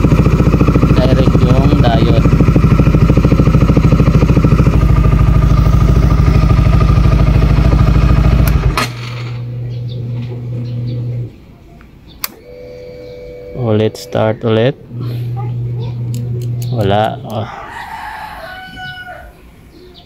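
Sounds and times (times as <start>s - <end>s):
motorcycle engine idling: 0.0s - 11.3s
low steady hum: 0.0s - 17.4s
sharp click: 11.8s - 12.4s.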